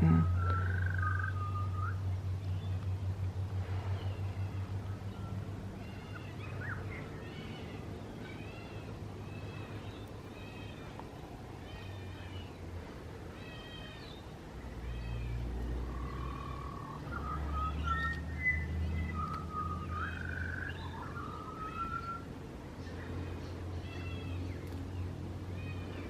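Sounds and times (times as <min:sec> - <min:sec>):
whistled bird song: 0:00.1 - 0:02.8, 0:03.9 - 0:10.9, 0:16.2 - 0:23.0.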